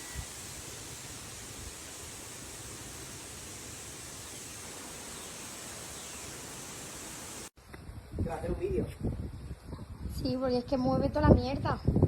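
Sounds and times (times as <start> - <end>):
steady outdoor hiss: 0.0 - 9.1.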